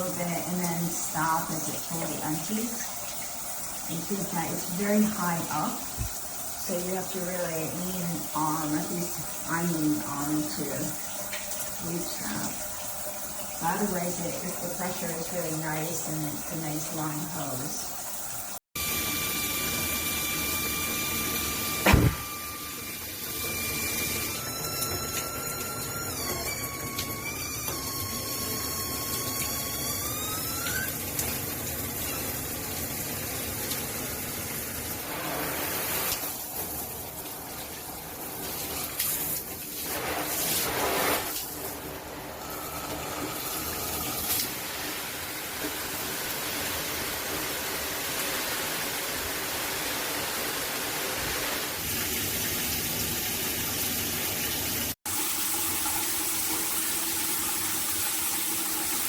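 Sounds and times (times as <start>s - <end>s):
water spraying from shower head: 0.0s - 18.6s, 34.9s - 52.3s
rising whistle: 18.8s - 31.0s.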